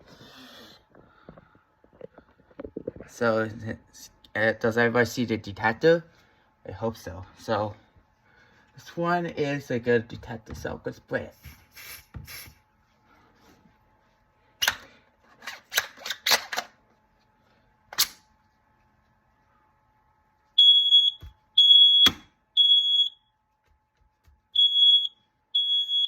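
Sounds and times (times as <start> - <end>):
smoke alarm beeping: 20.6 - 23.3, 24.6 - 26.0.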